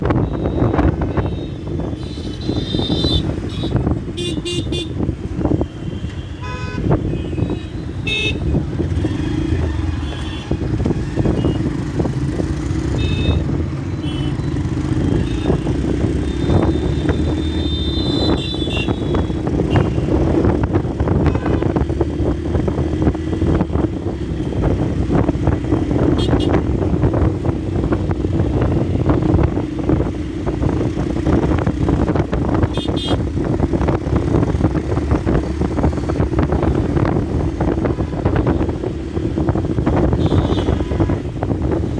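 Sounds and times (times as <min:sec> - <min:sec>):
vehicle horns honking: 0:00.2 - 0:08.7, 0:09.8 - 0:11.8, 0:12.8 - 0:14.5, 0:15.1 - 0:20.3, 0:21.1 - 0:21.8, 0:26.0 - 0:26.8, 0:32.6 - 0:33.2, 0:37.6 - 0:38.7, 0:39.9 - 0:41.6
motorcycle engine running: 0:07.6 - 0:20.9.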